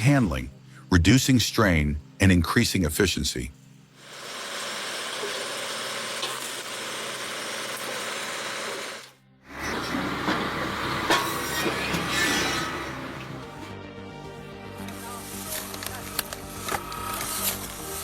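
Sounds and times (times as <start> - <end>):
machine hissing: 4.0 - 13.2, 15.0 - 18.0.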